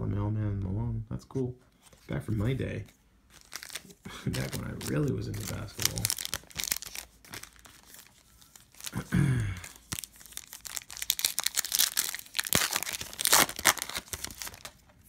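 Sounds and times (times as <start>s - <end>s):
plastic foil wrapper tearing: 3.4s - 14.8s.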